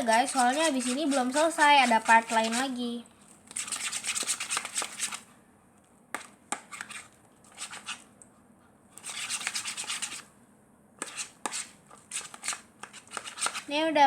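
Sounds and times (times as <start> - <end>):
utensil scraping a bowl: 0.0 - 2.8, 3.5 - 5.2, 6.2 - 8.1, 9.0 - 10.3, 11.0 - 13.7.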